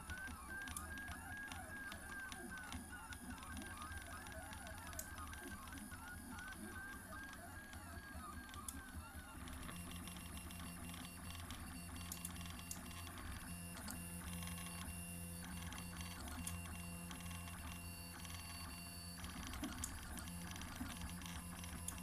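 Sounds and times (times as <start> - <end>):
small clicks: 11.5 - 14.0, 19.3 - 22.0.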